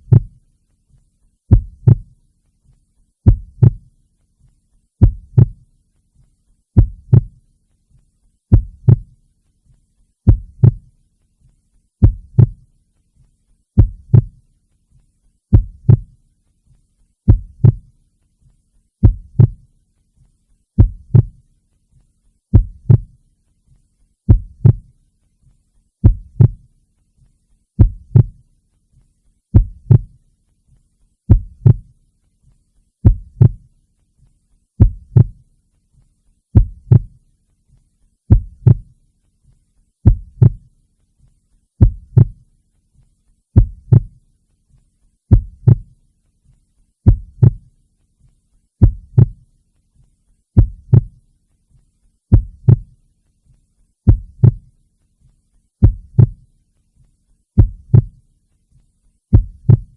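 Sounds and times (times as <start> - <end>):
slow heartbeat: 0.0 - 28.5, 29.5 - 30.2, 31.3 - 35.5, 36.5 - 37.2, 38.3 - 39.0, 40.0 - 42.5, 43.6 - 44.2, 45.3 - 46.0, 47.0 - 47.8, 48.8 - 49.5, 50.6 - 51.2, 52.3 - 53.0, 54.0 - 54.8, 55.8 - 56.5, 57.6 - 58.2, 59.3 - 59.9.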